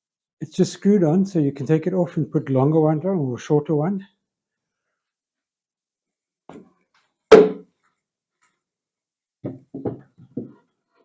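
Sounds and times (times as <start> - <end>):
wooden box knocking: 9.5 - 10.6.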